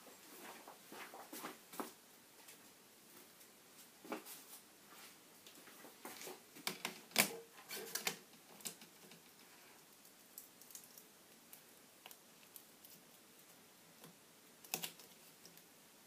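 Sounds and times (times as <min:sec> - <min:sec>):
plastic laptop parts clicking: 0:14.7 - 0:15.6.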